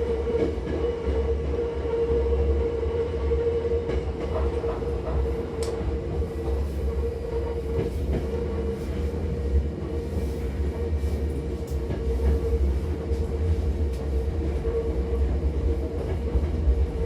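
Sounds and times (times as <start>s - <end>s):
train rumble inside passenger car: 0.0s - 17.0s
faint clicks from wheels and rails: 3.9s - 17.0s.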